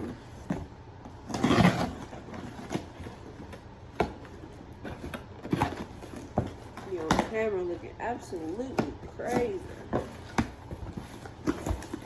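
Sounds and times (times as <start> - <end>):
cardboard packaging scraping: 0.0 - 12.0.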